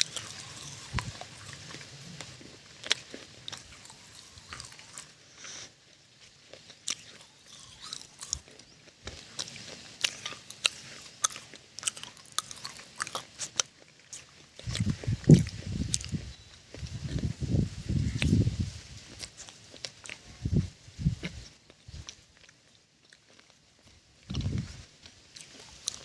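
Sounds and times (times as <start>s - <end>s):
crunchy biting and chewing: 0.0s - 26.0s.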